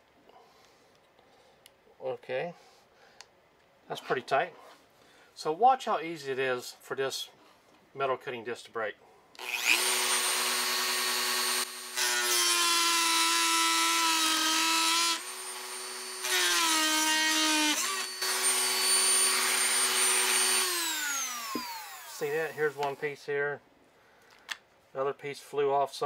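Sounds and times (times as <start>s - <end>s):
cutting disc grinding metal: 9.4s - 23.0s
rotary tool motor whining: 9.4s - 23.0s.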